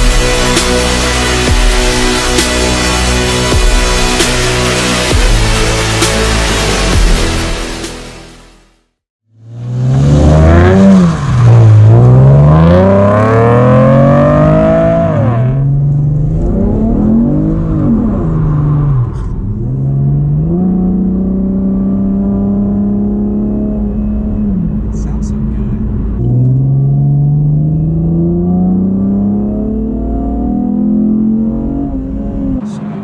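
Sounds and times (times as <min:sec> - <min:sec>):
car engine accelerating: 0:09.3 - 0:33.0.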